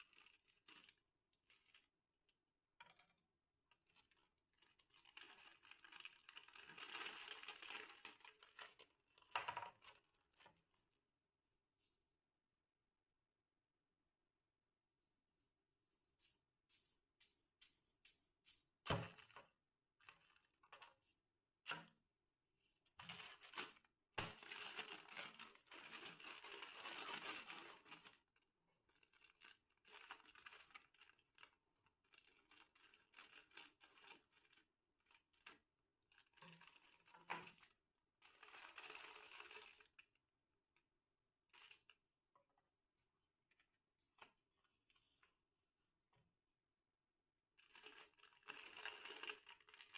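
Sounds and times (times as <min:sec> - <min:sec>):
plastic packets crinkling and tearing: 0:04.6 - 0:09.0, 0:23.2 - 0:34.6.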